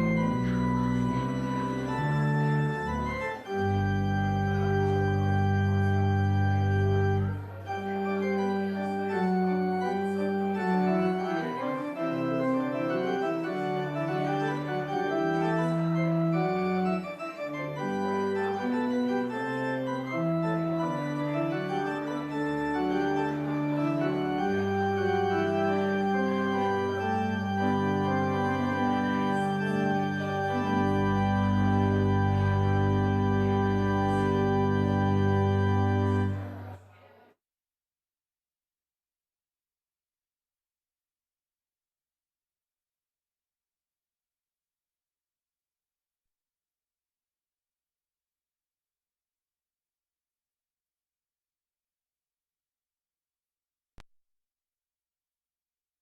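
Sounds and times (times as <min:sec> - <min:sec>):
deep organ bass notes: 0:00.0 - 0:36.7
organ playing sustained chords: 0:00.0 - 0:36.8.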